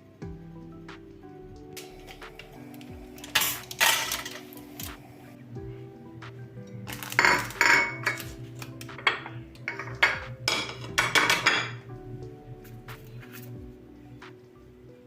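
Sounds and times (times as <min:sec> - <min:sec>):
dishes and cutlery clattering: 0:01.8 - 0:05.0, 0:06.9 - 0:11.9.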